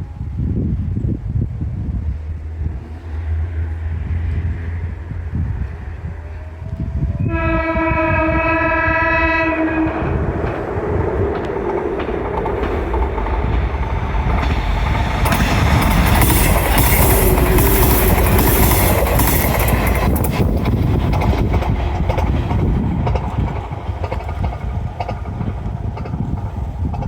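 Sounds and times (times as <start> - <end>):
train warning horn: 6.2 - 12.2, 14.4 - 20.7
train wheels clattering on rails: 6.7 - 27.0.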